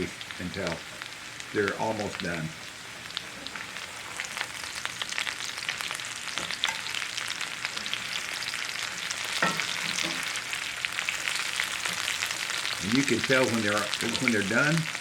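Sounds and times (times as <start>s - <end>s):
potatoes sizzling in a skillet: 0.0s - 15.0s.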